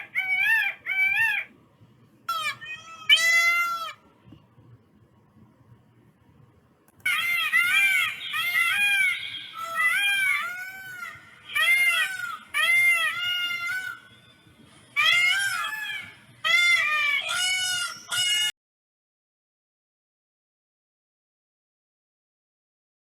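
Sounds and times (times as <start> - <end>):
peacock calling: 0.0 - 1.5, 2.3 - 4.0, 7.1 - 18.5.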